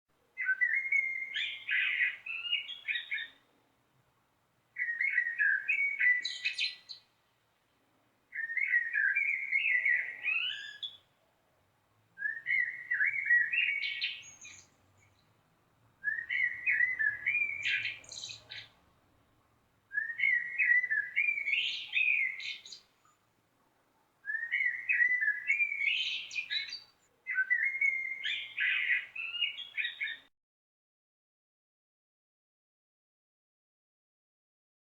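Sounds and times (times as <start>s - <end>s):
blackbird singing: 0.4s - 3.4s, 4.8s - 7.1s, 8.3s - 11.1s, 12.2s - 15.3s, 16.0s - 18.8s, 19.9s - 22.9s, 24.2s - 30.3s.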